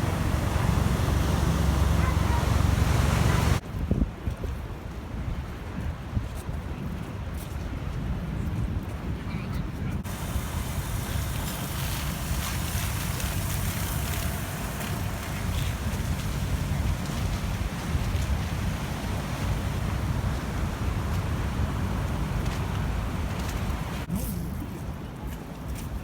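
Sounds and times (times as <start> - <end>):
surf breaking on beach: 0.0 - 3.6, 10.0 - 24.2
wind buffeting microphone: 0.0 - 26.0.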